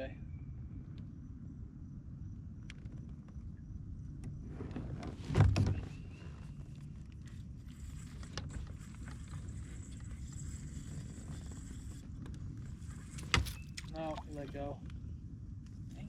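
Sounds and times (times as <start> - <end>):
kayak rumbling on water: 4.4 - 14.7.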